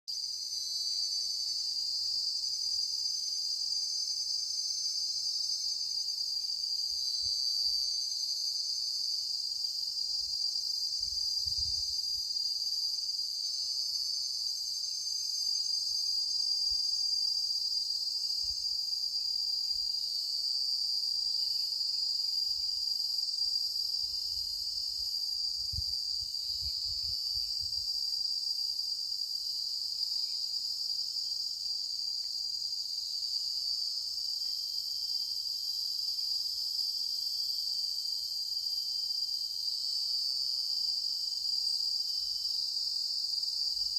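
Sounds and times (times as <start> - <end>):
high-pitched insect drone: 0.1 - 43.9.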